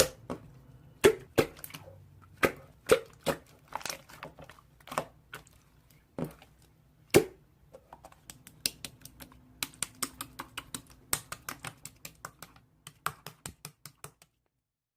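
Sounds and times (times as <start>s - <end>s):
slime clicking and popping: 8.2s - 14.1s.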